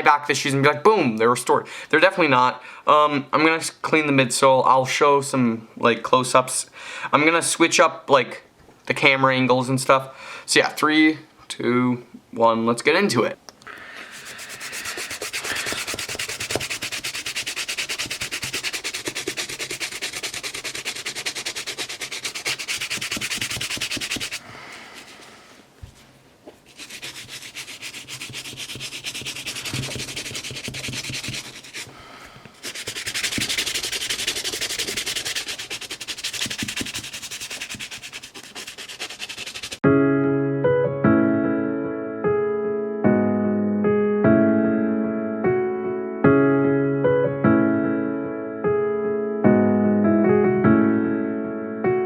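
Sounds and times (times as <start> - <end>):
brush scrubbing shoe: 14.0 - 26.0, 26.6 - 39.8.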